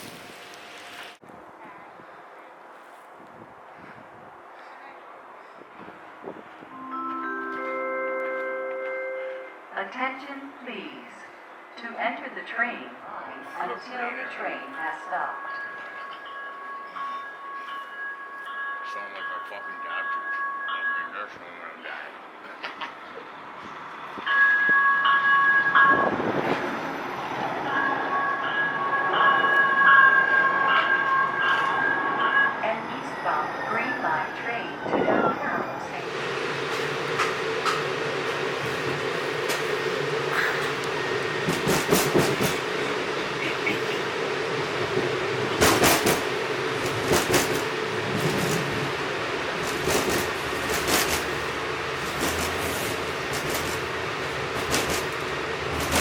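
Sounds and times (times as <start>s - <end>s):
train rumbling: 0.0s - 56.0s
wheels clattering on track: 36.0s - 56.0s.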